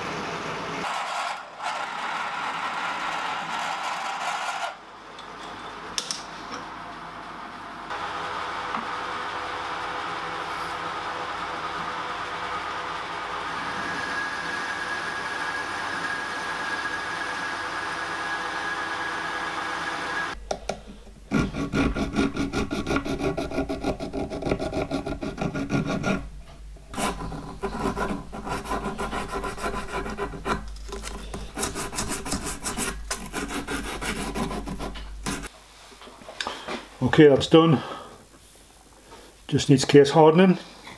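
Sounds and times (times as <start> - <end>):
machine tool whining: 7.9 - 20.4
file rasping on metal: 21.3 - 26.3, 27.0 - 30.6, 31.5 - 35.5.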